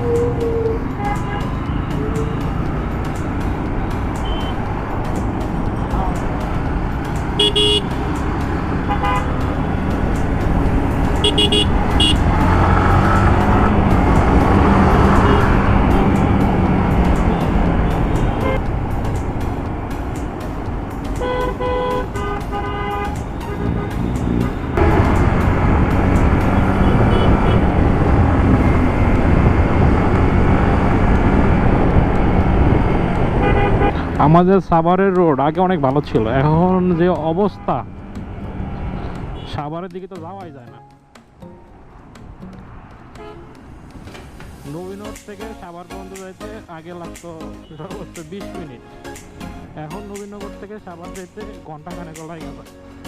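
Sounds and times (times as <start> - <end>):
motorcycle engine and road rumble: 0.0 - 40.2, 41.2 - 45.1
vehicle horn tooting: 0.9 - 2.1, 4.2 - 4.6, 7.4 - 8.0, 8.8 - 9.6, 11.2 - 12.4, 15.1 - 16.2, 17.2 - 18.6, 21.2 - 24.8, 26.6 - 27.7, 33.4 - 34.1, 43.2 - 43.5
wind rush on microphone: 26.4 - 34.2.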